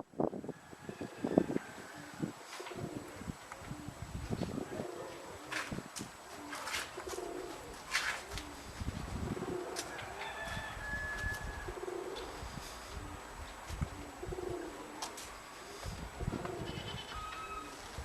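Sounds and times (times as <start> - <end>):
wind rumbling on microphone: 0.0 - 18.0
pigeons cooing: 0.6 - 18.0.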